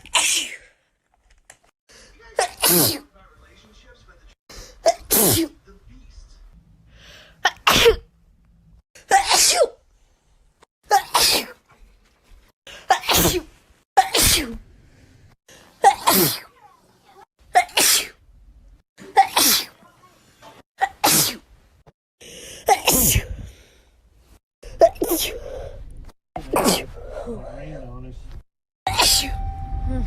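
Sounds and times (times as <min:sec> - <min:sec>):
person sneezing: 0:02.4 - 0:03.0, 0:04.8 - 0:05.5, 0:07.4 - 0:08.0, 0:10.9 - 0:11.6, 0:12.9 - 0:14.6, 0:15.8 - 0:16.5, 0:17.6 - 0:18.2, 0:19.0 - 0:19.8, 0:20.8 - 0:21.4, 0:22.7 - 0:23.4, 0:24.8 - 0:25.6, 0:26.4 - 0:27.0.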